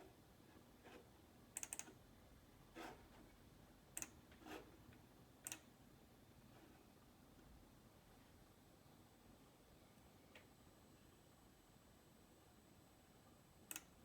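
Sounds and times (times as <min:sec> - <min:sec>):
keyboard clicks: 0:01.6 - 0:01.9, 0:13.7 - 0:13.9.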